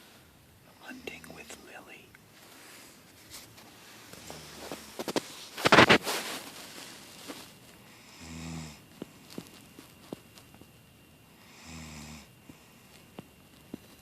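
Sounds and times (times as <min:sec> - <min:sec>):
woman snoring: 0:08.0 - 0:08.8, 0:11.4 - 0:12.3.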